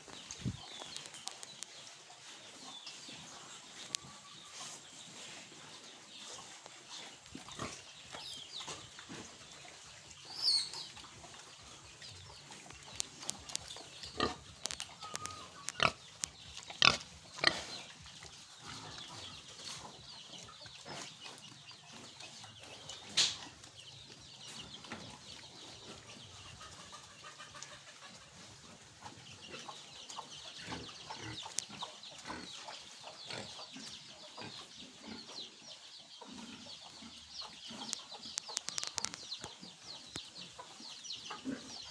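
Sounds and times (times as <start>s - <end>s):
chickens clucking: 0.0s - 41.9s
pigs vocalising: 6.2s - 23.1s.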